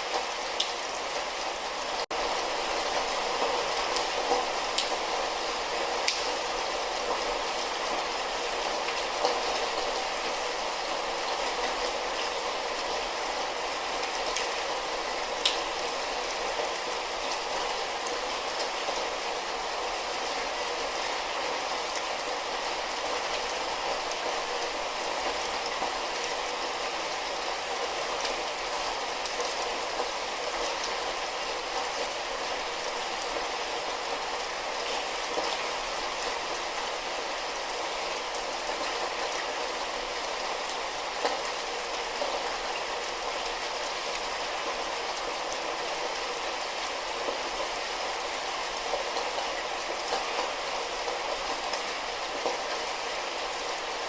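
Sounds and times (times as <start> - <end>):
light rain hissing: 0.0 - 54.0
raindrops ticking: 6.0 - 6.3.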